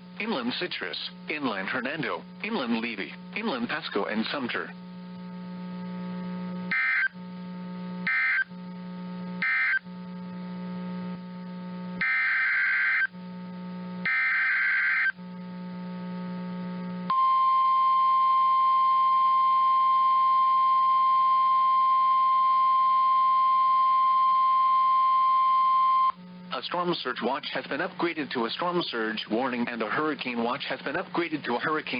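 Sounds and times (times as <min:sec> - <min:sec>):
harsh buzzing data chirps: 0:00.0 - 0:31.9
piercing warning alarm tone: 0:06.7 - 0:07.2, 0:08.1 - 0:08.5, 0:09.4 - 0:09.8, 0:12.0 - 0:13.1, 0:14.0 - 0:15.2.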